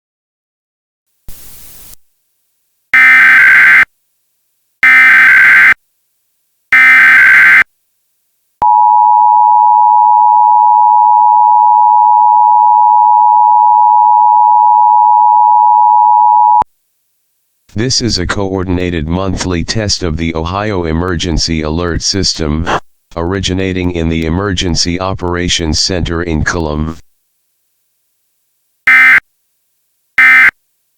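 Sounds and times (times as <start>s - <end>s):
burst of hiss: 1.3s - 2.1s
two-tone attention signal: 8.6s - 16.6s.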